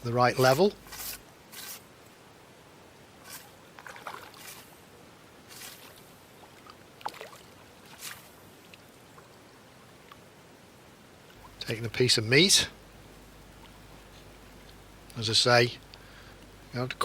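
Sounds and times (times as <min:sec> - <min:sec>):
small water splashes: 0:03.8 - 0:04.7, 0:05.5 - 0:09.4.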